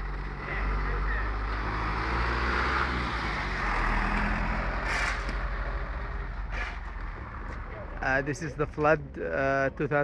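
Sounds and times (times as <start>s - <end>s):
vehicle engine rumble: 0.0s - 10.0s.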